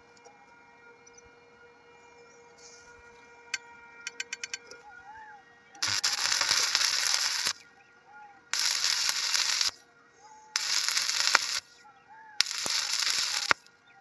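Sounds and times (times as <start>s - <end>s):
arc welding crackling: 5.8s - 7.6s, 8.6s - 9.8s, 10.6s - 11.8s, 12.4s - 13.7s.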